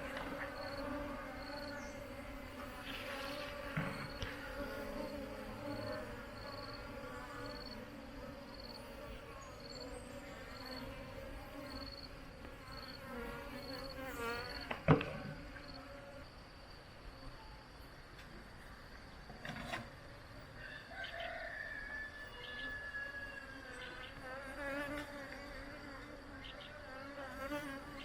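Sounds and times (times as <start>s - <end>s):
honeybees buzzing: 0.0s - 16.2s, 23.2s - 28.0s
high insect chirp: 0.3s - 19.4s, 20.0s - 28.0s.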